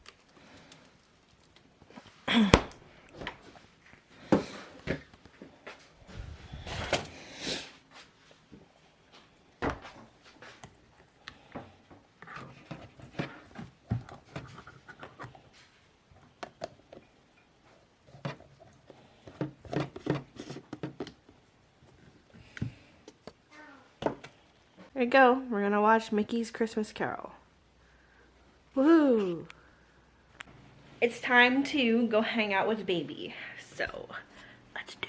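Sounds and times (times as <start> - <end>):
household objects knocking and clicking: 19.2 - 21.4.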